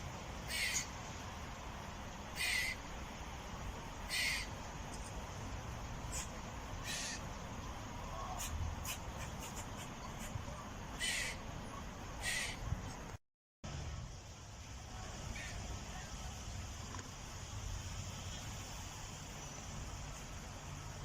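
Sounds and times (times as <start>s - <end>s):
steady background hiss: 0.0s - 21.0s
squirrel harsh hissy calls: 0.4s - 0.9s, 2.3s - 2.9s, 4.0s - 4.6s, 6.1s - 7.3s, 8.2s - 11.5s, 12.2s - 12.7s, 15.3s - 15.6s.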